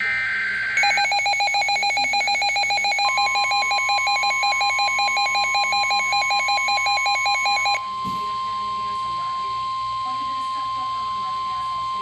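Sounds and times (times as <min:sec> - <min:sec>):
steady warning alarm tone: 0:00.0 - 0:12.0
alarm beeping rapidly: 0:00.8 - 0:09.0.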